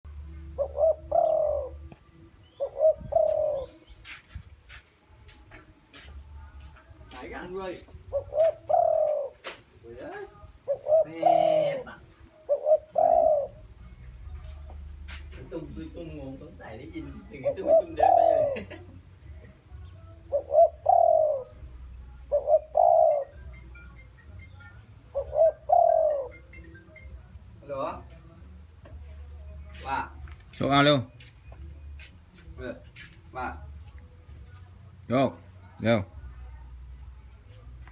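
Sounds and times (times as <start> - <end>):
dove cooing: 0.4 - 4.2, 7.5 - 19.2, 20.2 - 27.2.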